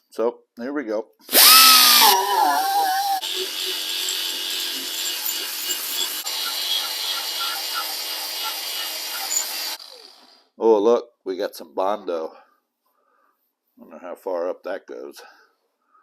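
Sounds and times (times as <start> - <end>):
power grinder grinding metal: 1.3 - 10.5.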